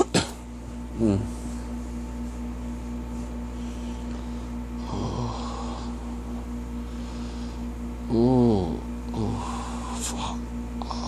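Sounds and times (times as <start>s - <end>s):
steady background hum: 0.0s - 11.0s
man groaning: 1.0s - 1.3s, 4.8s - 5.7s, 8.1s - 9.6s.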